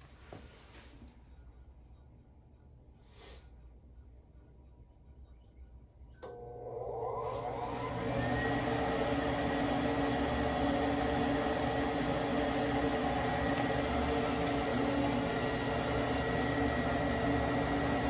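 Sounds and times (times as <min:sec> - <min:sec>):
vent blower humming with whine: 0:06.1 - 0:18.0.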